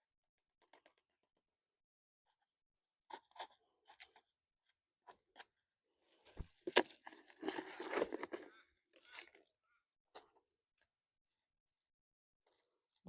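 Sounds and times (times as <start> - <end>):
soil scraping and crunching: 6.1 - 9.4.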